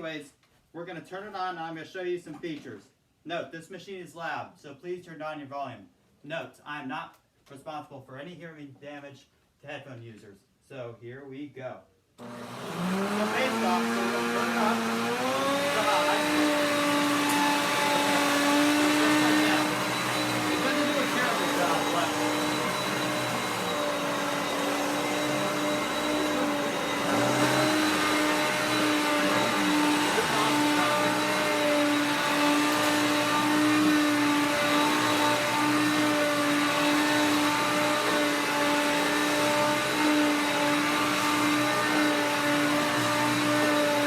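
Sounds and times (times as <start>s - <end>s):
upright vacuum cleaner running: 12.2s - 44.0s.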